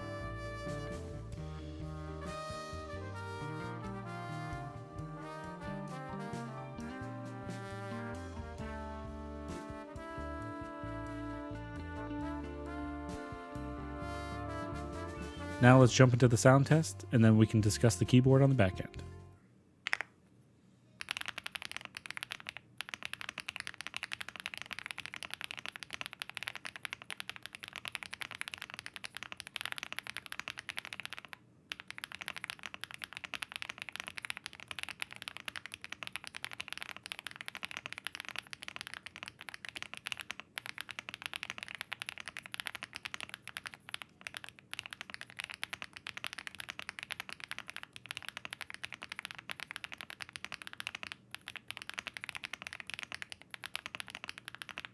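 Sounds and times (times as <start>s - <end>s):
mechanical keyboard typing: 21.0s - 54.9s.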